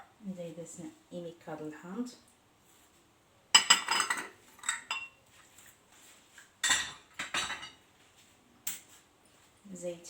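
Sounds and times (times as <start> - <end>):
utensil clinking against a bowl: 3.6 - 5.2.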